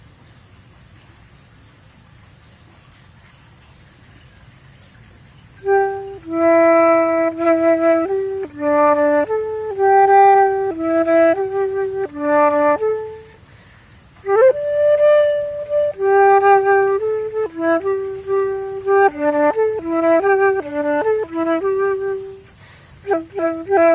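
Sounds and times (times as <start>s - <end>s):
flute melody: 5.6s - 13.4s, 14.2s - 23.9s.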